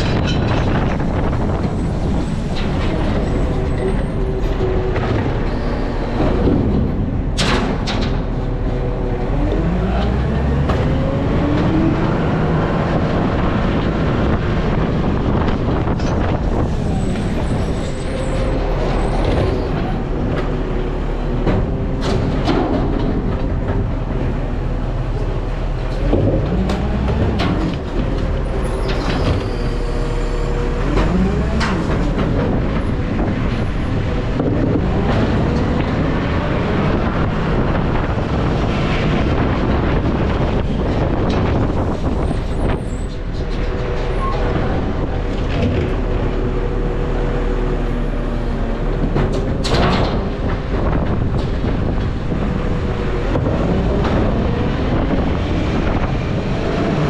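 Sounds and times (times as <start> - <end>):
diesel truck engine revving: 0.1 - 57.0.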